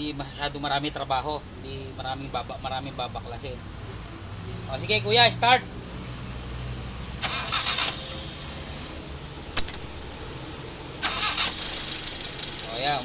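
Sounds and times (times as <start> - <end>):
car engine cranking: 7.0 - 8.4, 9.6 - 13.0
car engine running: 9.5 - 13.0.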